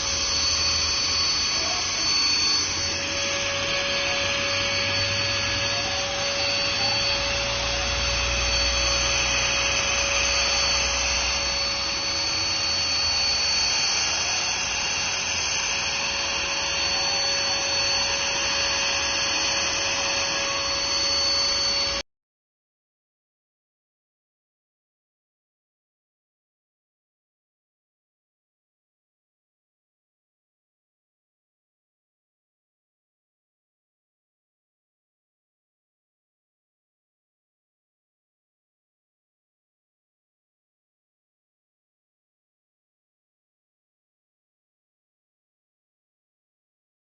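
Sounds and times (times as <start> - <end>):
handheld vacuum cleaner whine: 0.0 - 22.0.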